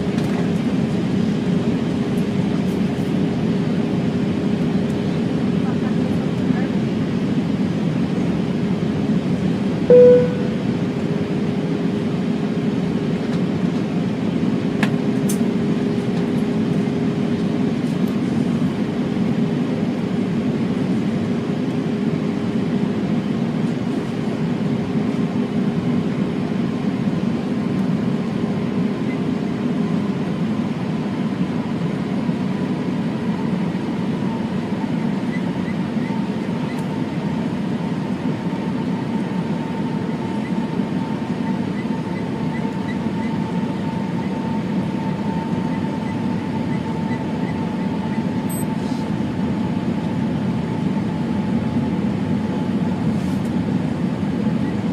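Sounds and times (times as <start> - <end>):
airliner cockpit rumble: 0.0 - 54.9
short beep: 9.9 - 10.6.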